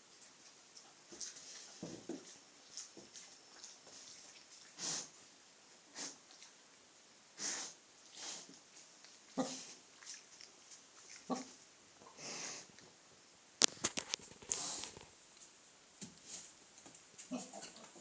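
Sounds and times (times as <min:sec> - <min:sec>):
piglets snorting and grunting: 0:09.3 - 0:10.2, 0:11.0 - 0:12.7, 0:17.3 - 0:18.0.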